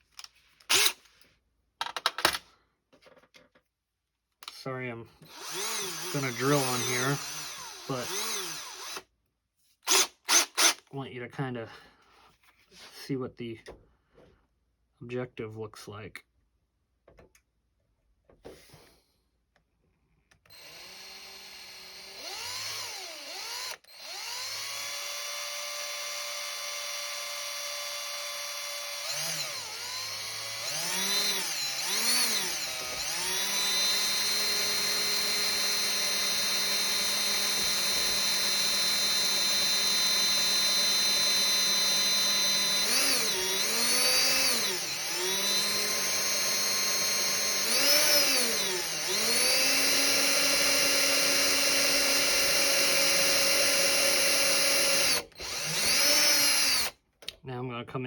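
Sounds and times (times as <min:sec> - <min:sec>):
electric micro drill whining: 0:00.7 - 0:01.0, 0:05.2 - 0:09.0, 0:09.9 - 0:10.8, 0:20.4 - 0:57.0.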